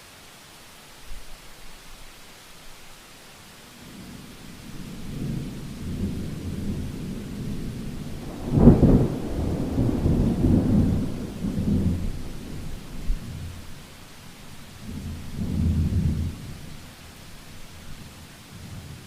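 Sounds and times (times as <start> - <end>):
heavy rain: 0.0 - 19.0
thunder clap and rumble: 4.7 - 13.7, 14.8 - 16.6.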